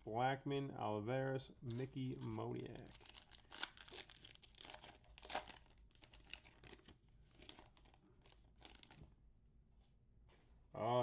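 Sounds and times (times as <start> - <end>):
wrapper crinkling and tearing: 1.7 - 9.1.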